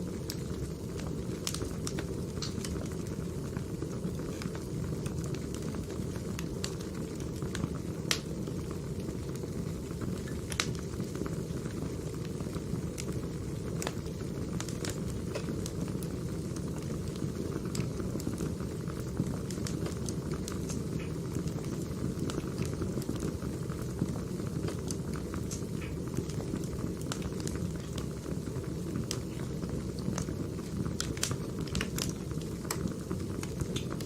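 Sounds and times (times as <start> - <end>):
wood fire crackling: 0.0 - 34.0.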